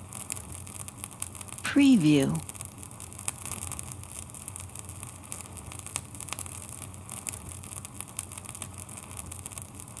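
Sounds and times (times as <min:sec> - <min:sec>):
vinyl crackles and pops: 0:00.0 - 0:10.0
vinyl record hiss: 0:00.0 - 0:10.0.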